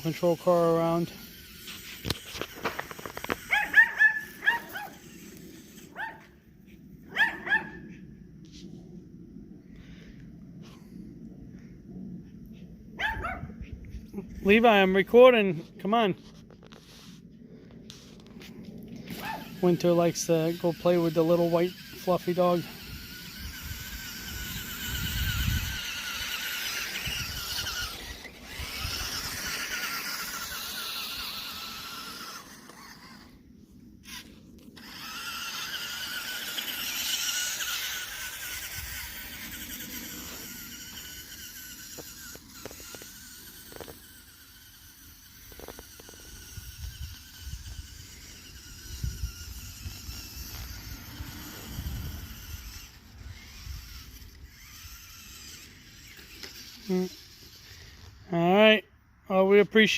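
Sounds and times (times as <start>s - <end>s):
electric motor and gears whining: 0.0s - 59.9s
dog barking in high yaps: 3.5s - 5.0s, 5.9s - 6.3s, 7.1s - 7.9s, 13.0s - 13.6s, 19.2s - 19.5s.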